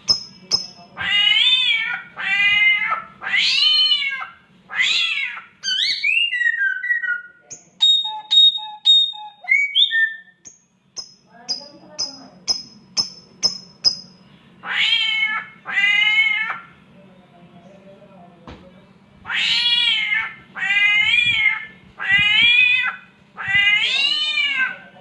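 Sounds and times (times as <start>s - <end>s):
bird mimicking cat meows: 1.0s - 7.3s, 14.6s - 16.8s, 19.2s - 24.9s
short high bird chirps: 5.7s - 10.3s.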